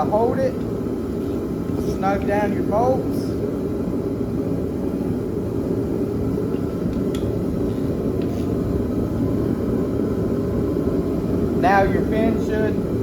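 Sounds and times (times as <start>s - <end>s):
shop heater droning: 0.0s - 13.0s.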